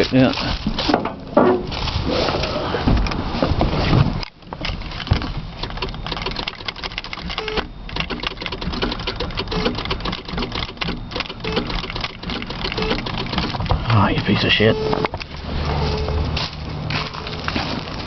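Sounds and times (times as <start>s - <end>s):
engine cranking without starting: 5.1s - 17.6s.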